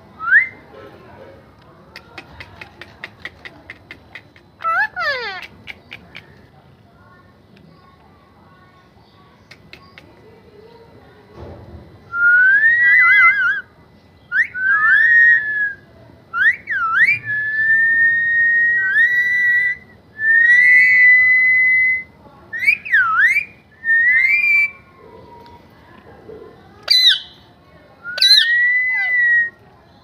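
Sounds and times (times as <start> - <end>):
parrot whistling: 12.2 - 13.7, 14.3 - 24.8, 26.9 - 27.4, 28.0 - 29.5.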